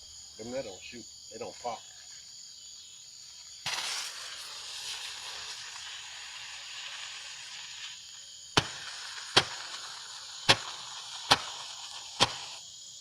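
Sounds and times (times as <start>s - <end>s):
firework hissing: 3.3s - 13.0s.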